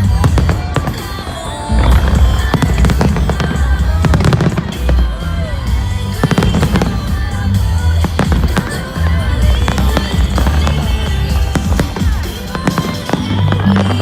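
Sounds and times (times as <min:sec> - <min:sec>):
fireworks bangs and crackles: 0:00.0 - 0:14.0
loud music: 0:00.0 - 0:14.0.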